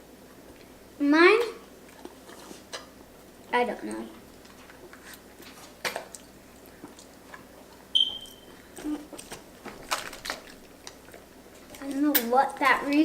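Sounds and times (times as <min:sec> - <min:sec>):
eating and packaging rustles: 0:01.8 - 0:13.0
short high ringing tone: 0:08.0 - 0:08.5.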